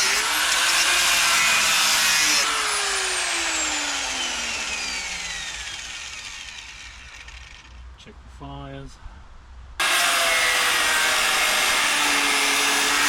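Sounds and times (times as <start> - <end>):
angle grinder cutting steel: 0.0 - 7.8, 9.8 - 13.0
grinder disc winding down: 1.4 - 7.8.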